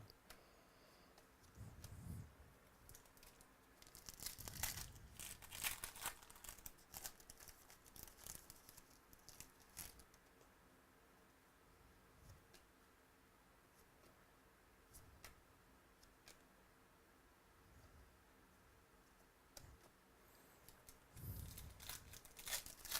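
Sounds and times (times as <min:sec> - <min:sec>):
wrapper crinkling and tearing: 0:02.9 - 0:10.1, 0:20.8 - 0:22.9.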